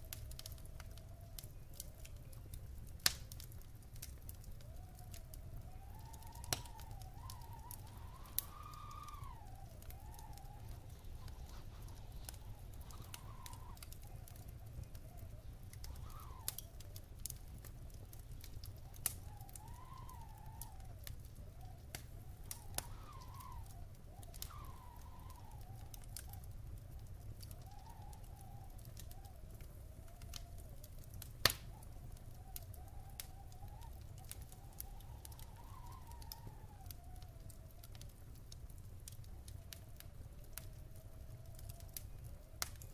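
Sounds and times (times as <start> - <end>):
wood fire crackling and popping: 0.0 - 42.9
thin wavering whistle: 4.6 - 16.8, 18.8 - 26.4, 27.5 - 29.6, 31.7 - 37.5.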